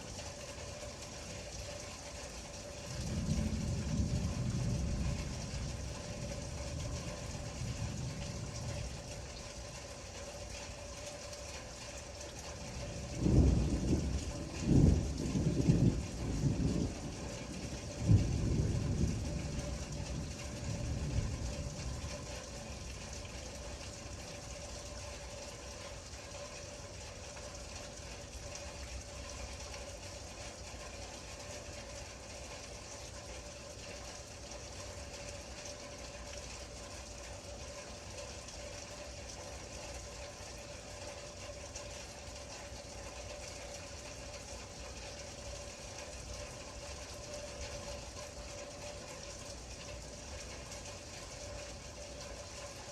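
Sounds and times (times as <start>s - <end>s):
low rumble of thunder: 0.0s - 11.6s, 12.4s - 34.6s
faint steady hum: 0.0s - 52.9s
steady rain falling: 0.0s - 52.9s.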